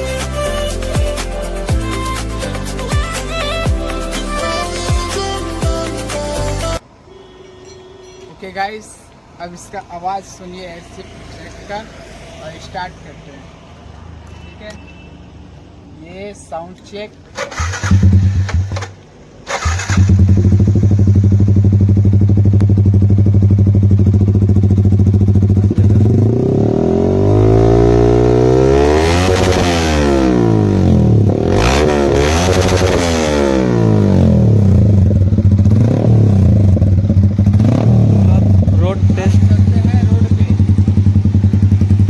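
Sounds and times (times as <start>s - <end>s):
motorcycle engine revving: 10.6s - 14.0s, 17.3s - 42.0s
motorcycle engine starting: 17.3s - 42.0s
motorcycle engine idling: 19.6s - 27.2s, 33.8s - 42.0s.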